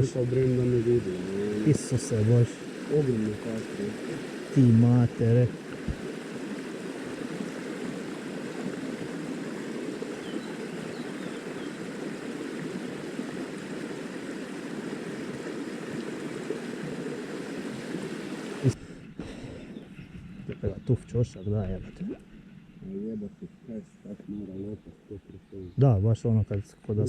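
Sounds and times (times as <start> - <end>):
stream rushing over stones: 0.0 - 18.8.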